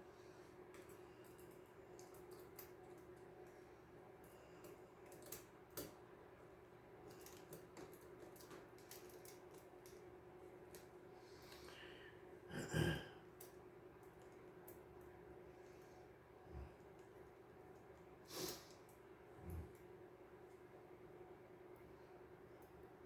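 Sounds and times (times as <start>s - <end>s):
low steady hum: 0.0s - 23.0s
small parts clicking and tapping: 0.7s - 3.6s, 4.2s - 6.0s, 7.0s - 10.1s.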